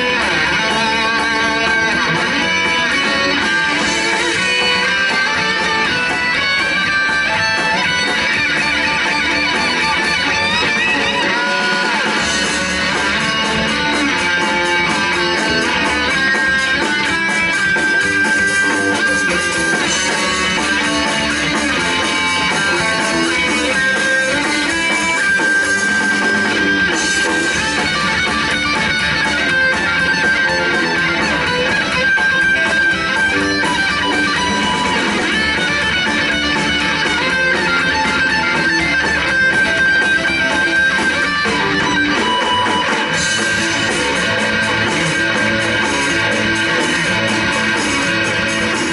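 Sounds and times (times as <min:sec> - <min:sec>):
bass guitar: 0:00.0 - 0:48.9
drums steady beat: 0:00.0 - 0:48.9
electric guitar lines: 0:00.0 - 0:48.9.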